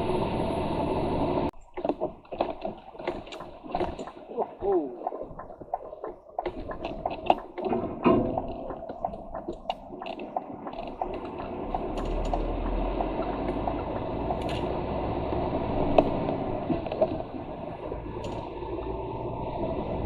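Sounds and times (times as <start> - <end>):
truck engine and road noise: 0.0 - 2.4, 6.4 - 20.0
clicks and rattles: 1.6 - 15.0, 15.9 - 18.6.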